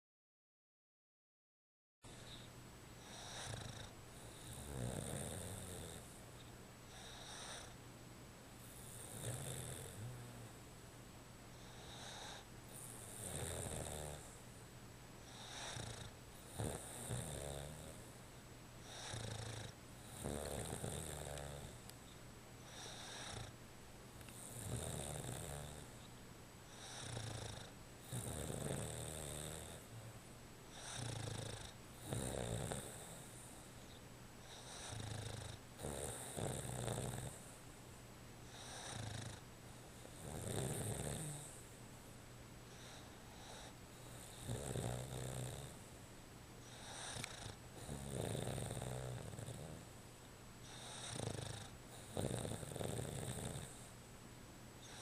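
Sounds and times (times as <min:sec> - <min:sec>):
dog snoring: 0:02.1 - 0:06.2, 0:06.9 - 0:07.8, 0:08.6 - 0:10.5, 0:11.6 - 0:14.4, 0:15.2 - 0:18.1, 0:18.8 - 0:21.9, 0:22.6 - 0:23.6, 0:24.3 - 0:26.1, 0:26.7 - 0:30.1, 0:30.7 - 0:37.6, 0:38.4 - 0:39.4, 0:40.0 - 0:41.6, 0:42.7 - 0:45.9, 0:46.6 - 0:49.9, 0:50.6 - 0:53.9, 0:54.8 - 0:55.0.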